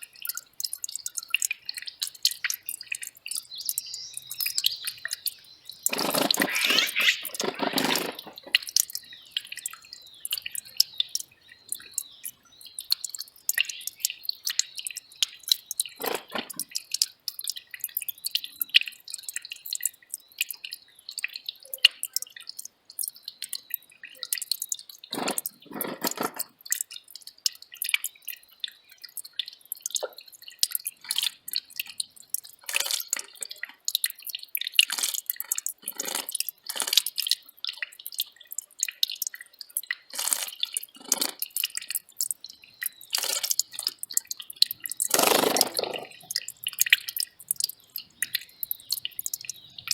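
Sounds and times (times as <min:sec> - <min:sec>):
stream trickling over rocks: 0:00.0 - 0:49.9
water gurgles: 0:00.0 - 0:49.9.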